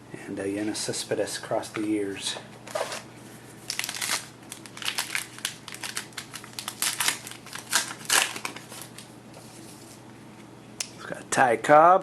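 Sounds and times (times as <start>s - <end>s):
wrapper crinkling: 3.7s - 9.1s.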